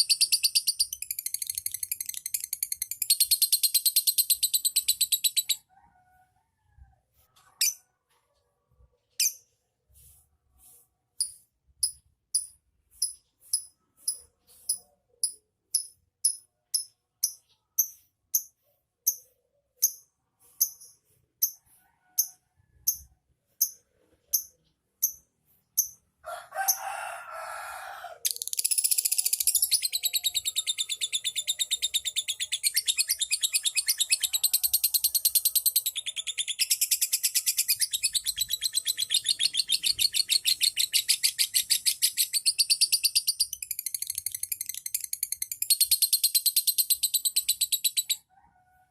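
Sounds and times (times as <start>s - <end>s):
lovebird chirping and trilling: 0.0s - 5.6s, 28.2s - 48.3s.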